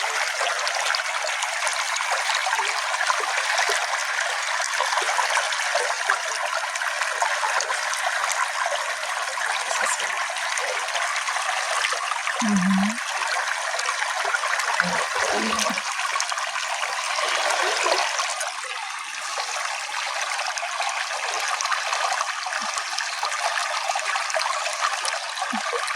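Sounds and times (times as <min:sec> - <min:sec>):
stream babbling: 0:06.9 - 0:13.4, 0:14.1 - 0:16.2.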